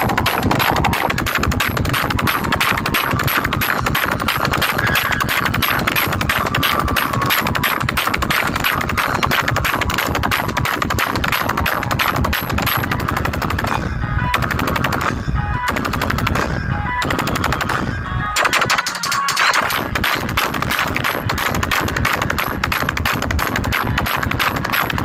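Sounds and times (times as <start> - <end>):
machine-gun fire sound effects: 0.0 - 17.8, 18.4 - 25.0.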